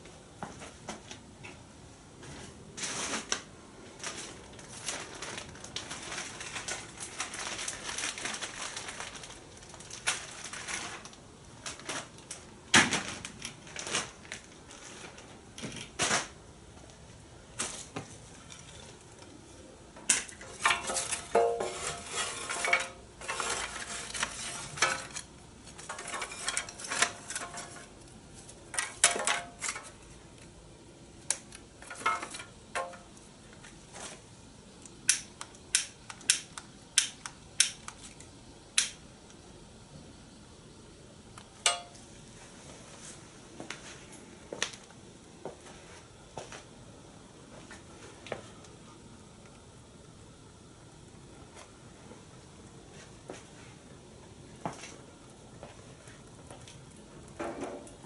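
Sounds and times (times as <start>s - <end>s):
metal cookware clattering: 20.4s - 27.9s, 28.8s - 29.9s, 31.8s - 33.0s, 41.6s - 42.0s.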